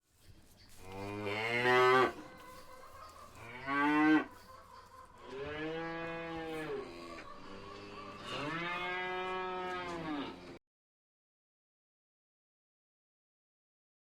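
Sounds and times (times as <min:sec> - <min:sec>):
cow mooing: 0:00.9 - 0:02.2, 0:03.4 - 0:04.3, 0:05.3 - 0:10.6.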